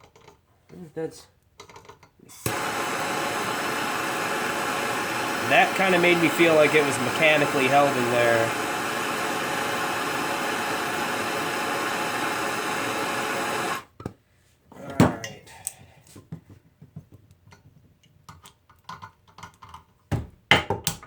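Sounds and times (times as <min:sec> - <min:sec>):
small clicks and knocks: 0:00.0 - 0:00.5, 0:01.4 - 0:02.2, 0:16.3 - 0:20.1
torch flame hissing: 0:02.4 - 0:13.9.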